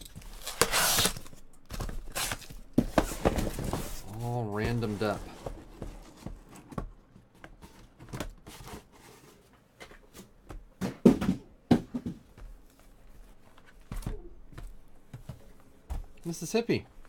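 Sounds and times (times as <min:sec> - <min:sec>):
cardboard packaging rustling: 0:00.0 - 0:10.1
scraping and knocking: 0:02.8 - 0:07.0.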